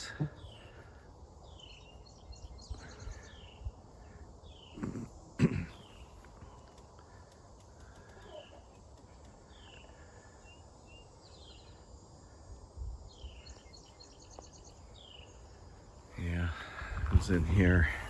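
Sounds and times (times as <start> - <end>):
bird chirps: 0.0 - 5.1, 7.8 - 11.9.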